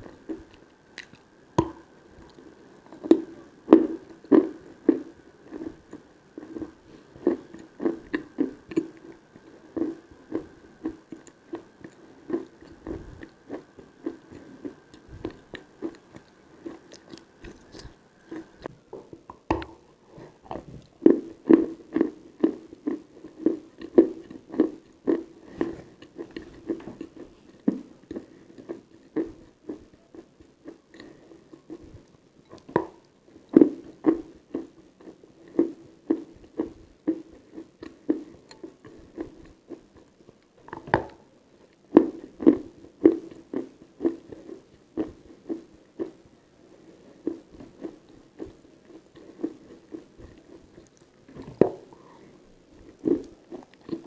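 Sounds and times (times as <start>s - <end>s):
chewing and crunching chalk: 47.1s - 52.2s.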